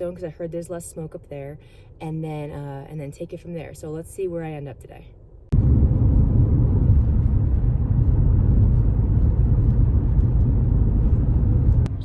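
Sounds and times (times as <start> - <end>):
car driving rumble: 5.5 - 12.0.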